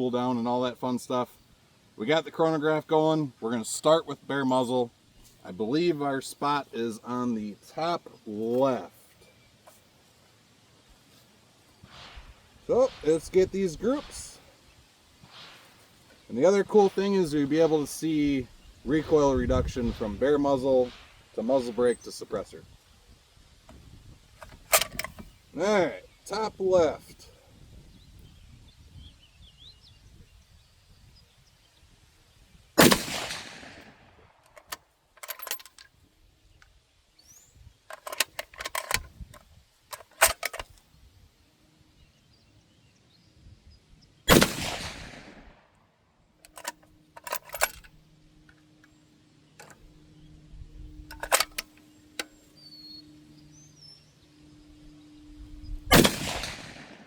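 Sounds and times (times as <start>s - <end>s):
rifle bolt metallic clicks: 24.4s - 25.4s, 34.4s - 36.0s, 37.9s - 40.9s, 46.4s - 49.9s, 50.8s - 53.3s, 55.9s - 57.0s
rifle shots echoing: 32.8s - 34.0s, 44.3s - 45.6s, 55.9s - 57.0s.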